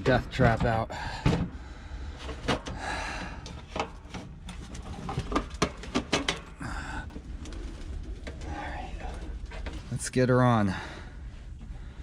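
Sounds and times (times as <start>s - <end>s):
space heater knocking and scraping: 0.0s - 1.6s, 2.2s - 10.7s.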